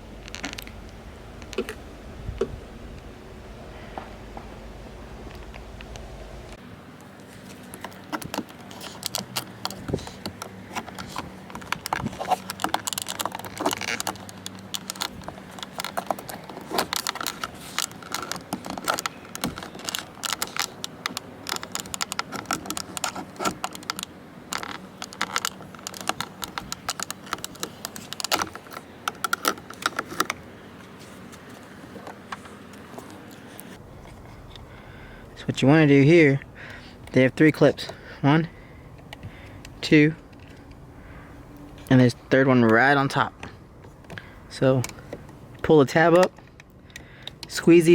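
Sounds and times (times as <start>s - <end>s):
small hard objects clicking: 7.7s - 30.4s.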